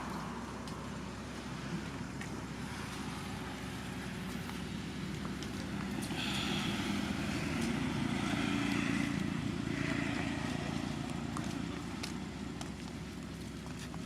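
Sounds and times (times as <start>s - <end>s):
vehicle engine passing by: 2.6s - 12.3s.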